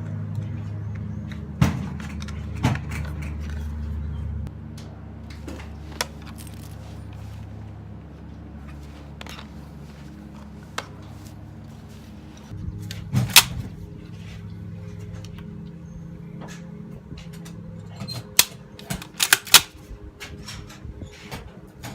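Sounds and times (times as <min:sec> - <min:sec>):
steady low hum: 0:00.0 - 0:21.9
rifle shot: 0:19.2 - 0:19.8.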